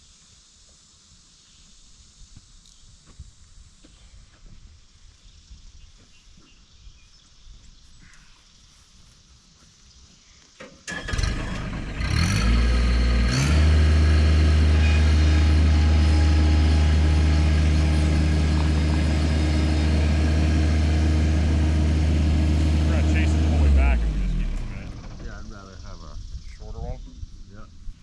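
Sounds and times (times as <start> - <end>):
engine starting and running: 10.6 - 26.4.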